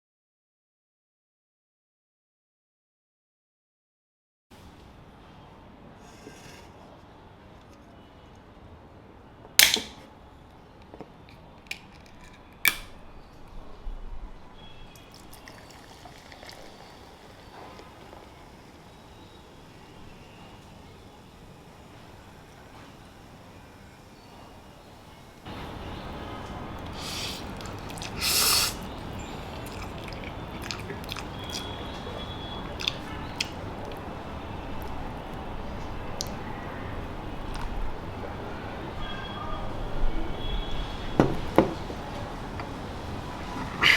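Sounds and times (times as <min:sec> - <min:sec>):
sharp snaps: 0:09.6 - 0:10.0
person slurping noodles: 0:27.0 - 0:28.9, 0:43.6 - 0:43.9
chewing with mouth clicks: 0:27.4 - 0:34.1.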